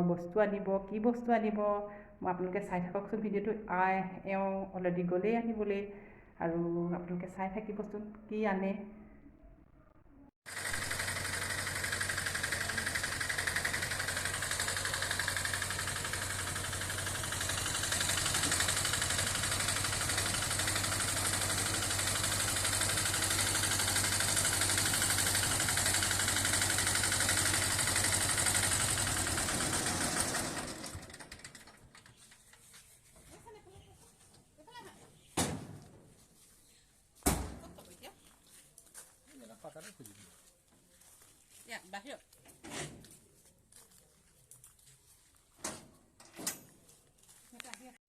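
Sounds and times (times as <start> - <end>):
engine running steadily: 10.5 - 31.8.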